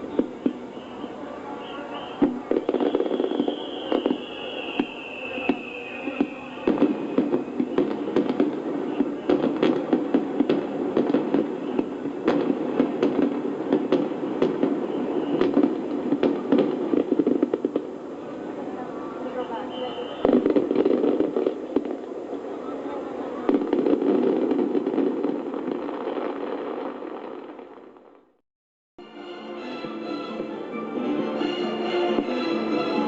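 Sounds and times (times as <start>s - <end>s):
falling firework whistle: 0.0s - 17.5s, 19.3s - 21.6s
dense fireworks crackling: 0.0s - 28.4s
fireworks bursting bangs: 0.0s - 28.4s.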